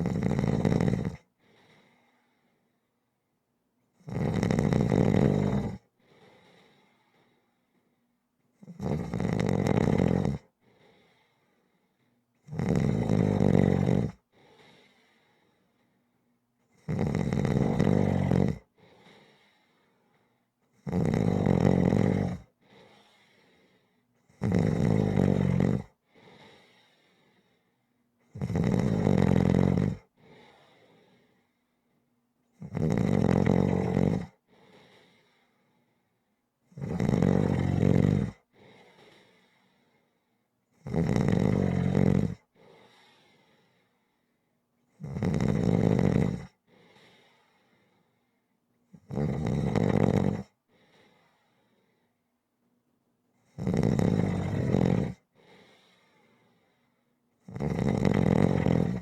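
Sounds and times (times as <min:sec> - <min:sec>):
person snoring: 0:00.0 - 0:01.3, 0:04.0 - 0:05.9, 0:08.6 - 0:10.5, 0:12.5 - 0:14.8, 0:16.8 - 0:19.3, 0:20.8 - 0:23.3, 0:24.3 - 0:26.9, 0:28.3 - 0:31.2, 0:32.6 - 0:35.2, 0:36.7 - 0:38.4, 0:40.8 - 0:43.3, 0:45.0 - 0:47.1, 0:49.0 - 0:50.6, 0:53.5 - 0:55.8, 0:57.5 - 0:59.0
faint puff of breath: 0:14.4 - 0:16.0, 0:30.2 - 0:31.7, 0:42.6 - 0:44.3, 0:46.7 - 0:48.3, 0:50.7 - 0:52.2, 0:55.4 - 0:57.0.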